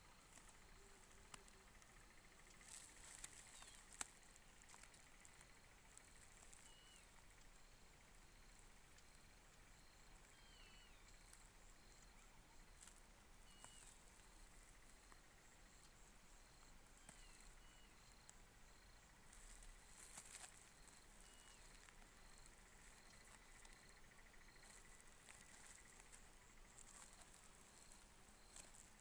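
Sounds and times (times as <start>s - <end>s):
bird chirping: 0.0s - 29.0s.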